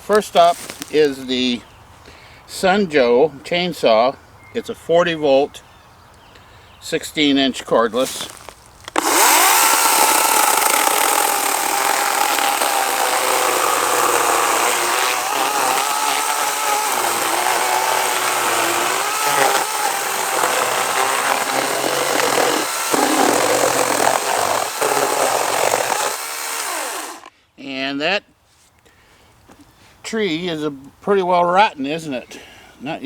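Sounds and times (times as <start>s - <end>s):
electric chainsaw cutting log: 8.9s - 27.3s.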